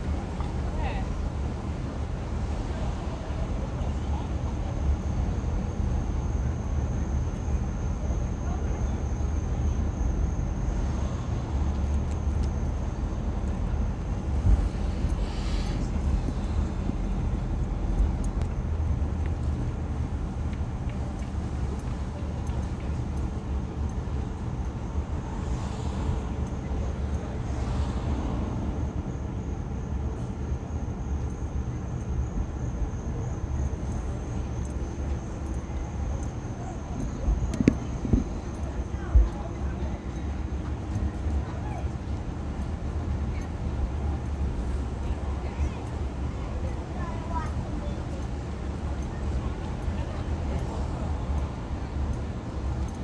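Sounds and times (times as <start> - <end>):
car road and engine rumble: 0.0 - 40.6.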